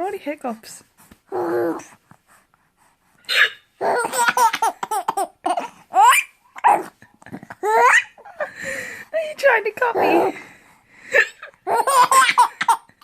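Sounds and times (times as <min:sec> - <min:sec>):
baby hiccups: 0:03.3 - 0:04.2
baby laughing and squealing: 0:03.3 - 0:06.9, 0:07.6 - 0:08.5, 0:11.2 - 0:12.9.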